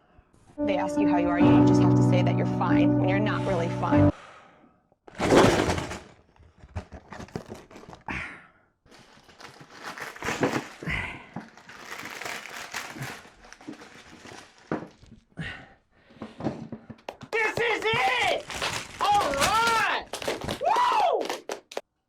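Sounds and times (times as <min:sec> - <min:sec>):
cardboard box tearing and crumpling: 0:05.2 - 0:06.0, 0:06.7 - 0:08.1, 0:08.9 - 0:10.9, 0:11.5 - 0:15.1, 0:17.8 - 0:20.6.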